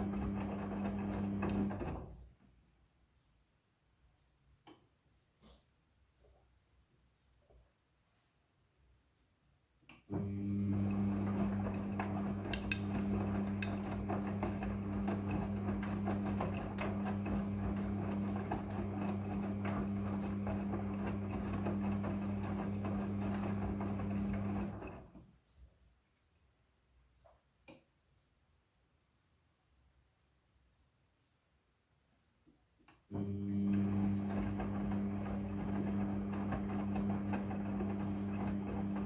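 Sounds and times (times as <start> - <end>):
washing machine motor hum: 0.0 - 2.1, 10.1 - 25.1, 33.1 - 39.0.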